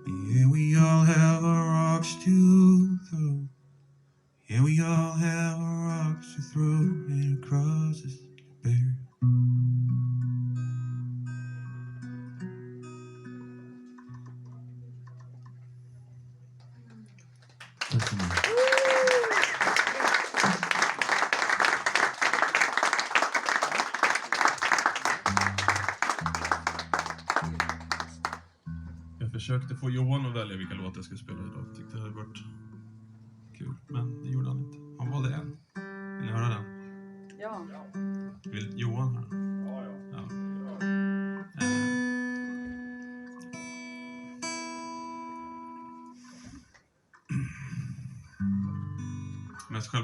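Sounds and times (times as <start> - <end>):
audience applauding: 16.6 - 28.5
acoustic guitar notes ringing: 30.3 - 46.0.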